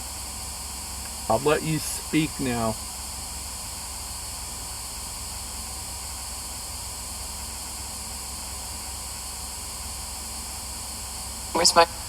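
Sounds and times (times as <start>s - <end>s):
low hum: 1.1s - 2.8s.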